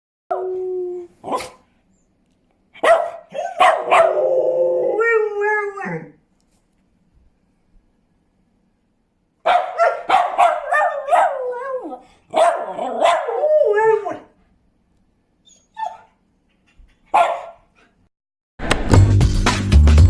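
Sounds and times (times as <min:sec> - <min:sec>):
dog warbling howl: 0:00.3 - 0:01.6, 0:03.4 - 0:06.2, 0:09.8 - 0:14.3
dog barking sharply: 0:01.3 - 0:01.6, 0:02.8 - 0:04.2, 0:09.4 - 0:11.4, 0:12.3 - 0:13.4, 0:17.1 - 0:17.7.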